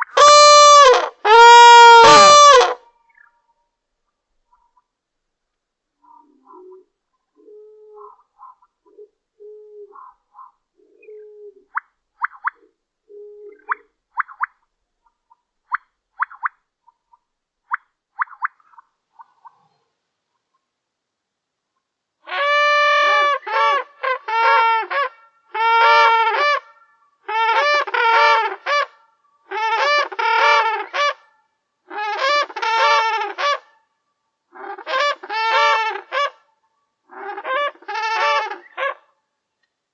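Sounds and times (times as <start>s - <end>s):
cranes calling: 0.0s - 2.8s.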